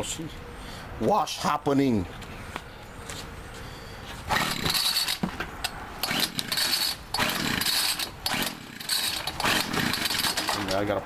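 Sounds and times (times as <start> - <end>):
recoil starter cord pulls: 4.3 - 5.3, 6.0 - 10.9
trimmer engine cranking: 4.3 - 11.0.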